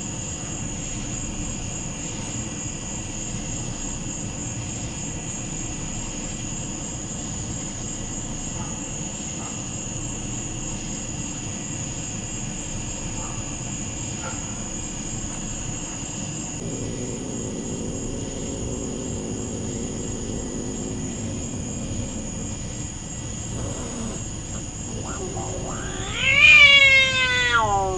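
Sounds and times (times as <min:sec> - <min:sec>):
night insects trilling: 0:00.0 - 0:27.9
steady low rumble: 0:16.6 - 0:26.3.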